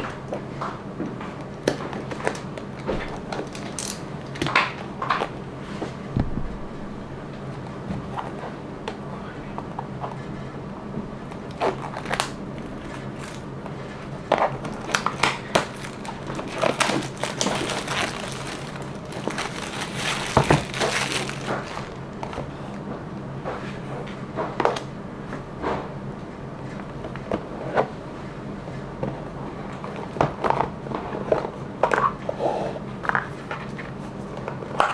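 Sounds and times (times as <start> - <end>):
plastic clicks and packaging crinkling: 1.6 - 5.3, 11.4 - 22.5
low steady hum: 1.7 - 28.4.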